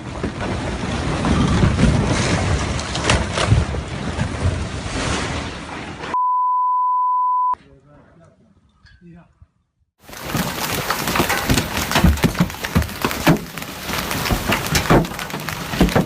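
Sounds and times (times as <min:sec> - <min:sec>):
rockslide roar with cracks: 0:00.0 - 0:06.1, 0:10.0 - 0:16.0
high censor bleep: 0:06.2 - 0:07.6.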